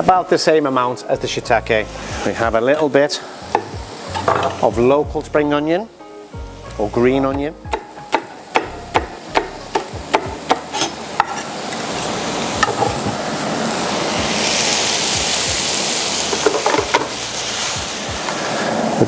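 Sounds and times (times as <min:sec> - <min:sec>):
food sizzling in frying pan: 0:00.0 - 0:19.0
knife chopping on cutting board: 0:03.5 - 0:03.8, 0:07.7 - 0:11.4.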